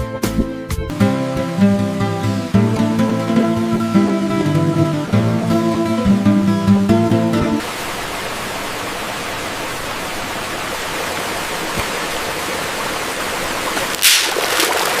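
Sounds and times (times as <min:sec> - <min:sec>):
running water rushing: 0:00.3 - 0:15.0
brief louder hiss: 0:14.0 - 0:14.4.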